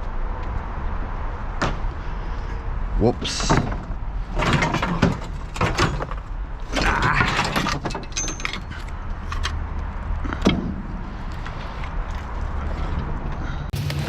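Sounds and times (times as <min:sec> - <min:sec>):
scrap metal clinking and rattling: 0:03.4 - 0:09.6.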